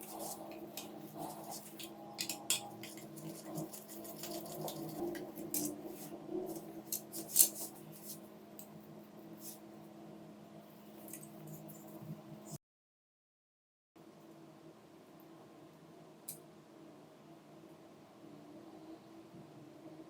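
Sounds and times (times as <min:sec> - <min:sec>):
hand tools clicking and scraping: 0:00.0 - 0:05.7, 0:06.5 - 0:07.7.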